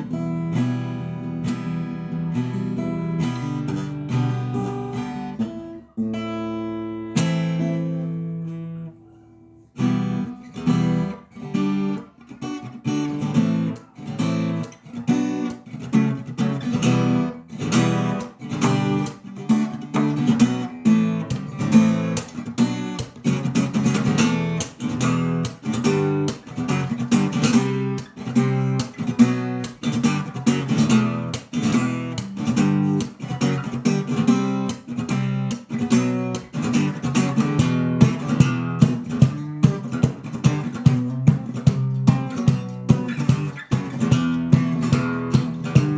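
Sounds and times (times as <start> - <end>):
acoustic guitar fingerstyle: 0.0 - 45.9
percussive taps on guitar body: 19.9 - 20.5, 35.5 - 45.9.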